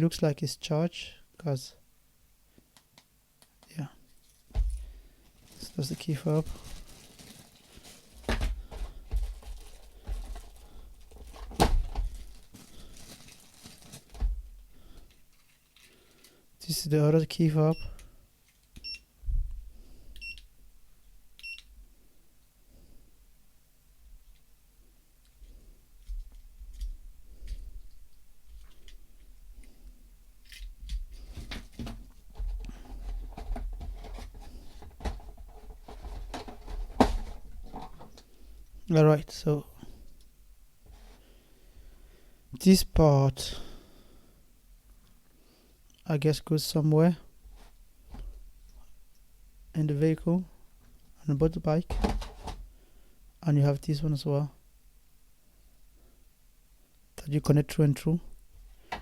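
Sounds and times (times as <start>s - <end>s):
plastic packaging rustling: 4.2s - 16.4s, 30.4s - 38.4s.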